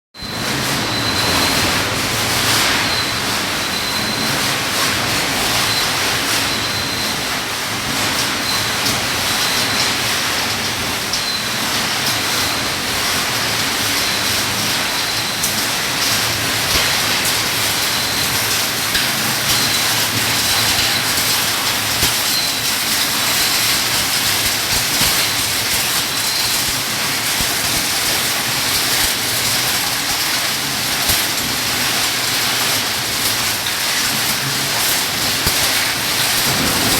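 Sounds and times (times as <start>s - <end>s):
water and gravel rushing: 14.9s - 36.9s
machinery hum: 35.6s - 36.9s.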